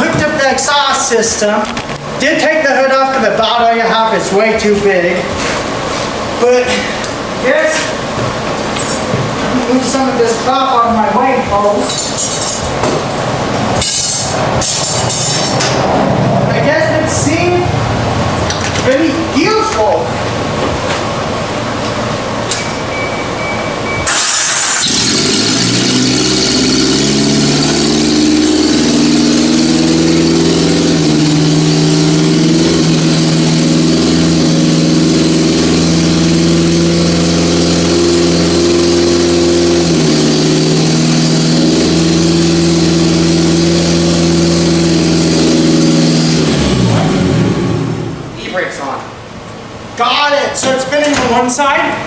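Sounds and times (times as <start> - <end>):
car engine running without exhaust: 24.0 - 48.4.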